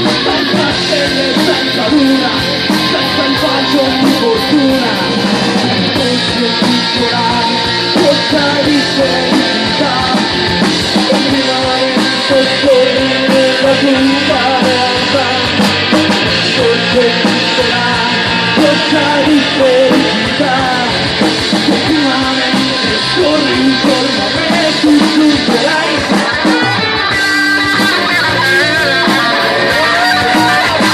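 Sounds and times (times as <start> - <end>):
drum kit: 0.0 - 30.9
electric guitars: 0.0 - 30.9.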